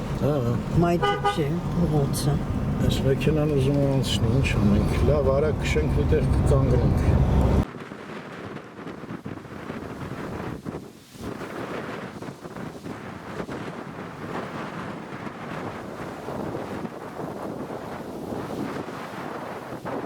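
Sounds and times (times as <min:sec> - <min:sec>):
loud low rumble: 0:00.0 - 0:07.6
wind buffeting microphone: 0:00.0 - 0:20.0.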